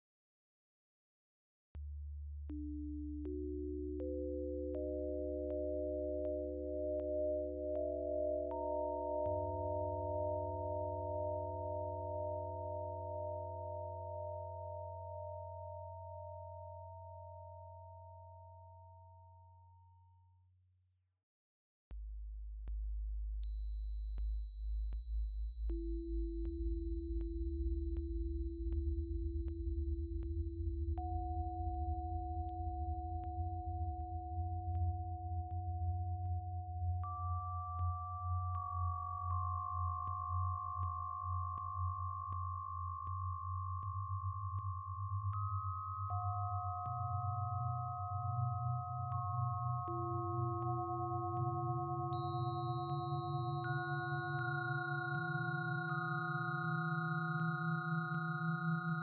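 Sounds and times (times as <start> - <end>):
middle sine tone: 1.8 - 19.5, 21.9 - 59.0
steady high sine tone: 2.5 - 18.8, 23.4 - 47.0, 49.1 - 59.0
synthesised low hum: 21.9 - 34.3.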